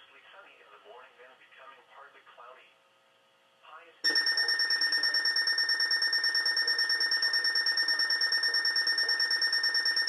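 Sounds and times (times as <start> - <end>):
weather radio alert alarm: 4.1 - 10.0.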